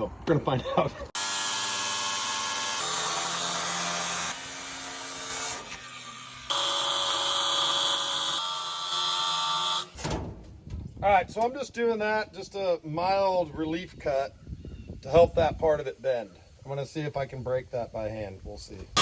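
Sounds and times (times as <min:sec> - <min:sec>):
power tool cutting sheet metal: 0:01.2 - 0:10.0.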